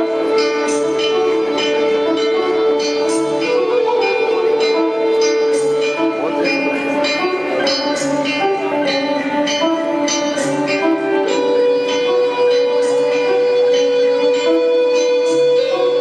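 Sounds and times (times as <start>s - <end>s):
light percussive strikes: 0.0s - 16.0s
live band music: 0.0s - 16.0s.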